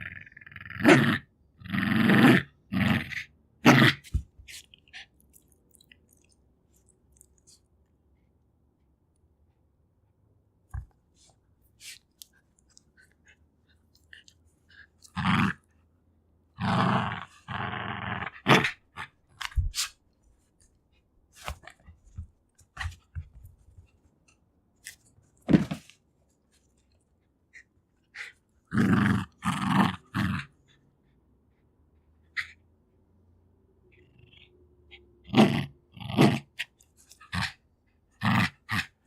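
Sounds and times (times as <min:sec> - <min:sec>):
dog growling: 0:00.0 - 0:04.0, 0:16.6 - 0:19.2, 0:28.2 - 0:30.6, 0:35.2 - 0:36.6.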